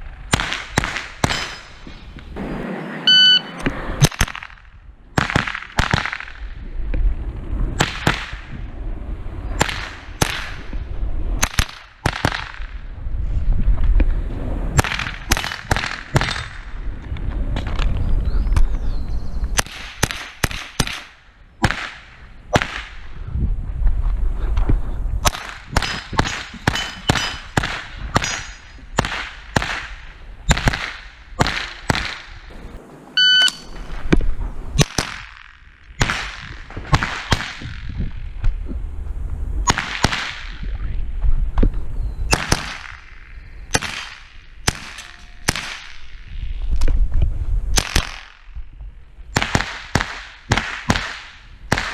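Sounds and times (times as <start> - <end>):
rifle shots: 0.3 - 1.7, 4.0 - 4.6, 5.2 - 6.5, 9.6 - 10.6, 11.4 - 12.8, 14.8 - 16.7, 19.6 - 23.0, 25.2 - 32.4, 34.8 - 37.9, 39.6 - 40.6, 42.3 - 46.2, 49.3 - 51.9
steel targets ringing: 44.9 - 45.6.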